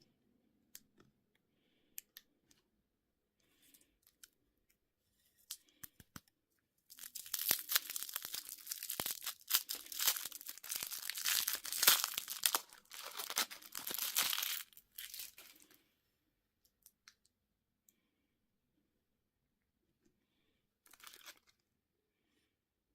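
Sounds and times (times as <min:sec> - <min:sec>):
candy wrapper tearing and crinkling: 0:06.9 - 0:15.8, 0:20.9 - 0:21.6.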